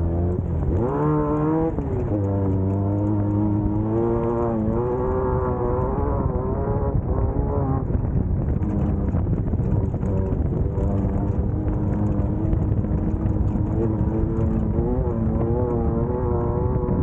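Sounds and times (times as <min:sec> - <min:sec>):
heavy low rumble: 0:00.0 - 0:17.0
race car engine running hard: 0:00.0 - 0:17.0.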